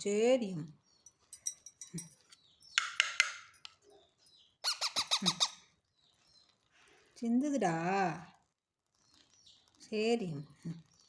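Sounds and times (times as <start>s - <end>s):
parrot squawking and chattering: 4.6s - 5.6s.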